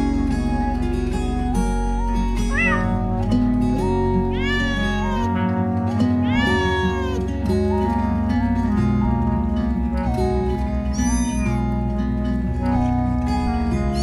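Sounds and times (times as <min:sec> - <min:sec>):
background music: 0:00.0 - 0:14.0
cat meowing: 0:02.5 - 0:03.2, 0:04.2 - 0:07.3, 0:10.9 - 0:11.6.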